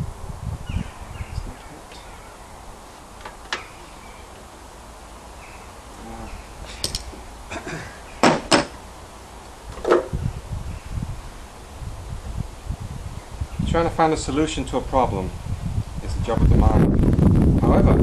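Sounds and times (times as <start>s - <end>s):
low outdoor background: 0.0s - 18.0s
objects knocking and clinking: 6.8s - 7.2s.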